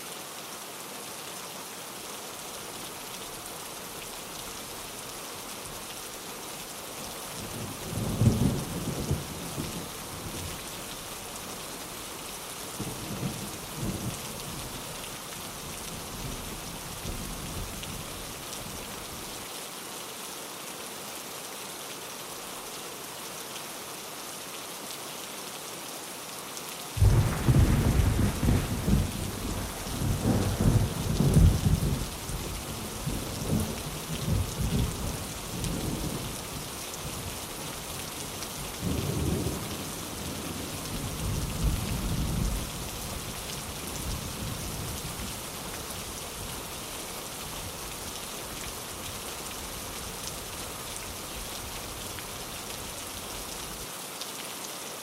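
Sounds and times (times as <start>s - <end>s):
thunder rumbling: 27.0s - 35.0s
rain hissing: 27.0s - 40.0s.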